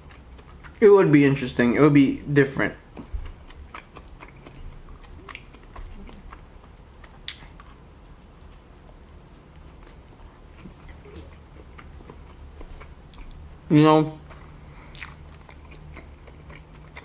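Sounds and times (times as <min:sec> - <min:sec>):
wet mouth clicks and smacks: 0:07.1 - 0:07.7.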